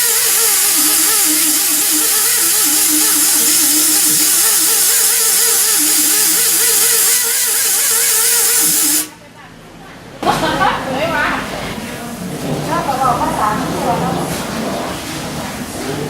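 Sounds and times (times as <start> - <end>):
wavering vibrato melody: 0.0 - 9.1
loud steady hiss: 0.0 - 9.2.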